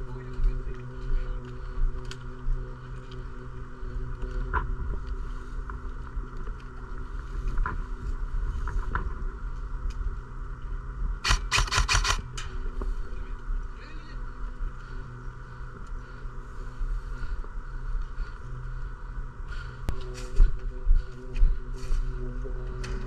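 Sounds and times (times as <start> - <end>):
steady low hum: 0.0 - 23.0
airsoft gun shots: 11.2 - 12.2.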